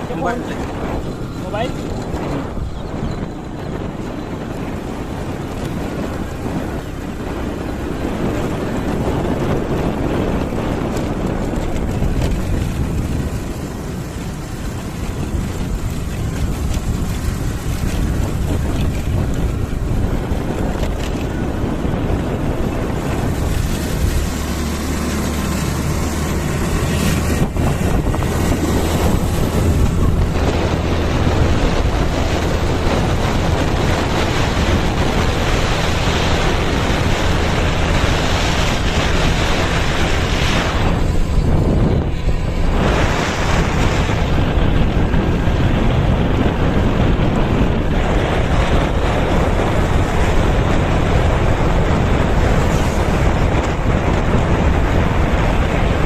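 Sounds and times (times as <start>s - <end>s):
wind buffeting microphone: 0.0s - 56.0s.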